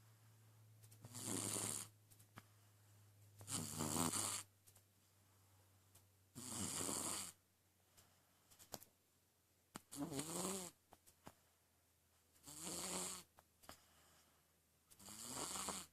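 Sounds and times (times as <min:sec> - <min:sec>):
person snoring: 0:01.0 - 0:01.9, 0:03.4 - 0:04.4, 0:06.4 - 0:07.4, 0:09.9 - 0:10.8, 0:12.4 - 0:13.3, 0:15.0 - 0:15.9.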